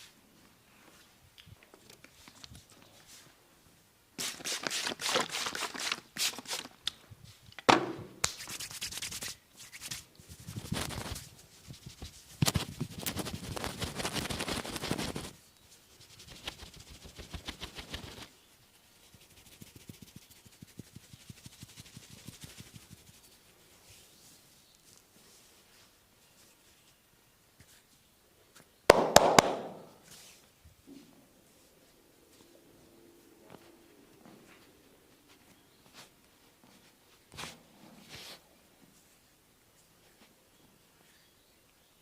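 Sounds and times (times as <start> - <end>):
hands rubbing and tapping skin: 8.2 - 15.4, 16.0 - 18.3, 19.1 - 23.4.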